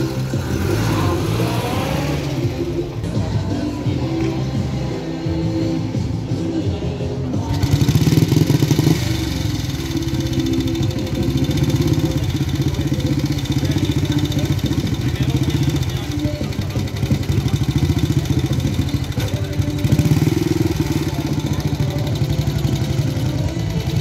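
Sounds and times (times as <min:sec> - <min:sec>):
vehicle engine running and revving: 0:00.0 - 0:06.4, 0:07.3 - 0:24.0.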